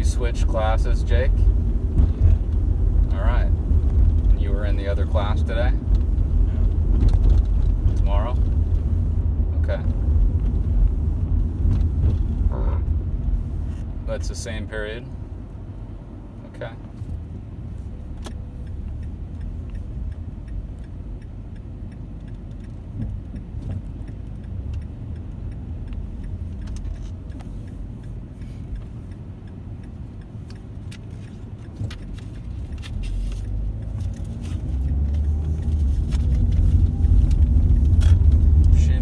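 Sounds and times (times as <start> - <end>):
car road and engine rumble: 0.0 - 39.0
light clicks and rattles: 18.0 - 39.0.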